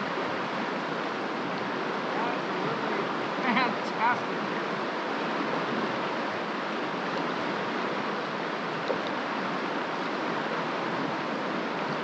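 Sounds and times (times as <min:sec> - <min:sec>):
river water rushing: 0:00.0 - 0:12.0.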